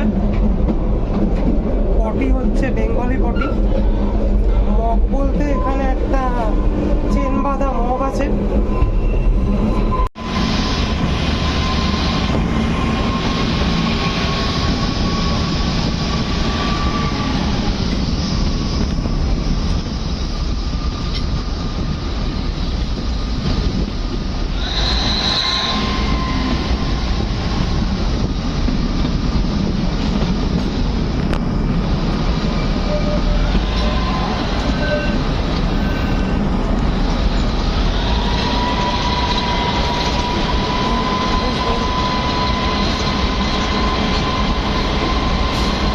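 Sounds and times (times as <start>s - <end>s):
train wheels rumbling: 0.0s - 45.9s
wheels squealing on curves: 24.5s - 27.2s.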